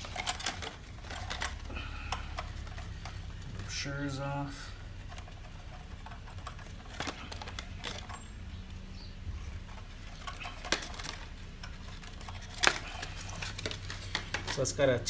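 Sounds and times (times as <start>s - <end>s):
paper rustling and clicks: 0.0s - 3.8s, 4.5s - 8.8s, 9.5s - 15.0s
steady low hum: 0.0s - 15.0s.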